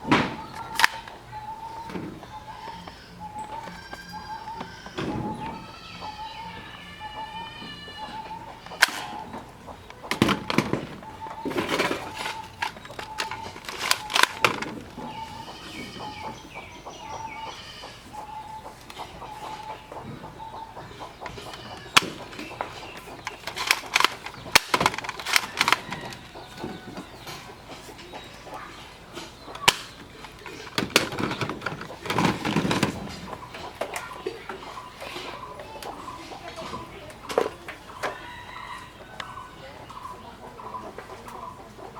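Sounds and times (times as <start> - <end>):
chickens clucking: 0.0 - 41.9
sharp clicks: 0.1 - 5.6, 8.2 - 17.4, 21.2 - 28.6.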